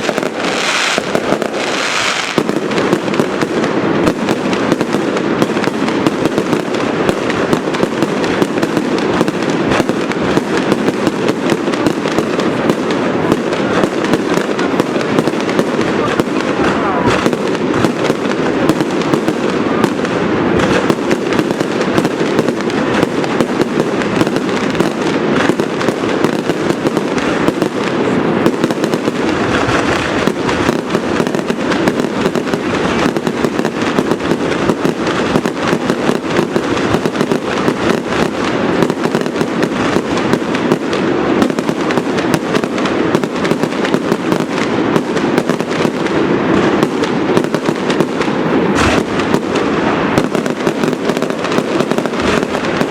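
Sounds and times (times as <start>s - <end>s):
fireworks bangs and crackles: 0.0s - 52.9s.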